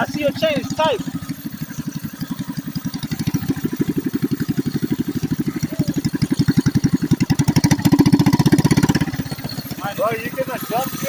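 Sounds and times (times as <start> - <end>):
small engine idling: 0.0 - 11.0.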